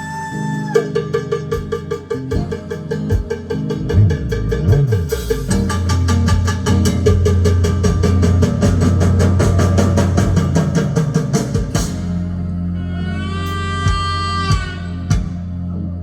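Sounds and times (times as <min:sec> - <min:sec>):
fast percussion chugging: 0:00.0 - 0:12.3
steady bass: 0:00.0 - 0:16.0
drum hits: 0:00.7 - 0:12.4
held horn notes: 0:11.8 - 0:16.0.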